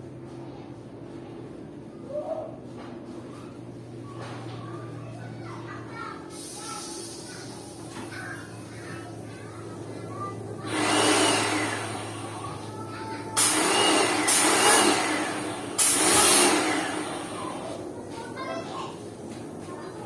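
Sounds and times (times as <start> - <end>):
pressure washer spraying: 10.7 - 12.3, 13.4 - 17.7.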